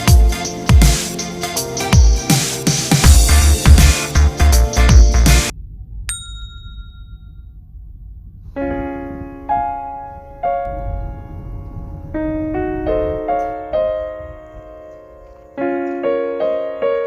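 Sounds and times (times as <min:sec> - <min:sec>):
gentle piano melody: 0:08.6 - 0:17.0.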